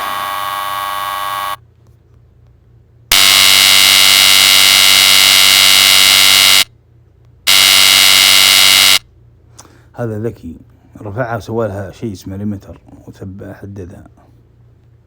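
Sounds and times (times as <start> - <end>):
electric high-voltage buzzing: 0.0 - 1.6, 3.1 - 6.7, 7.5 - 9.0.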